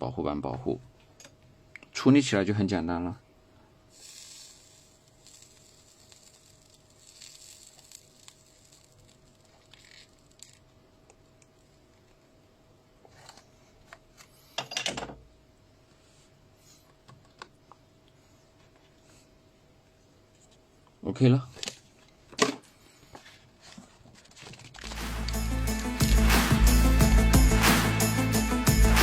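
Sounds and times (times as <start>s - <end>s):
scraping and handling noises: 21.6s - 25.3s.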